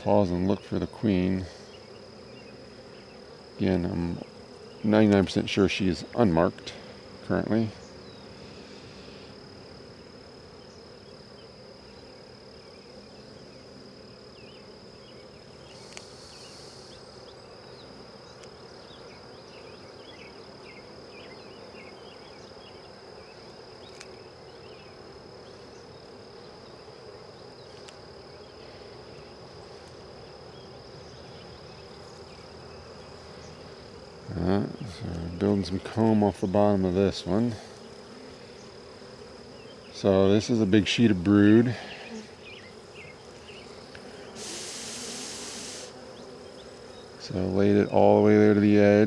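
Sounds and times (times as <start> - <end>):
honey bees buzzing: 0.0 - 49.0
brief hiss: 44.4 - 46.0.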